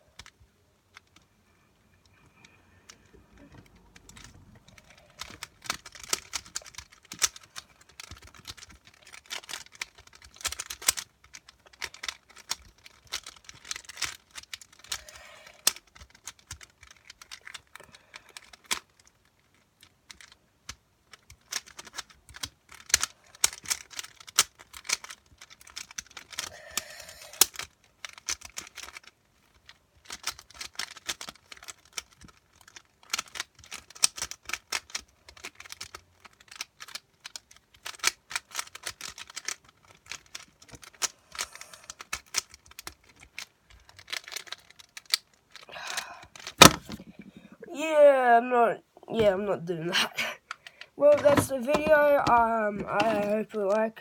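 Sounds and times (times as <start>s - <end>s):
puzzle cube plastic clicking: 0.0s - 1.3s, 1.9s - 47.6s, 50.3s - 54.0s.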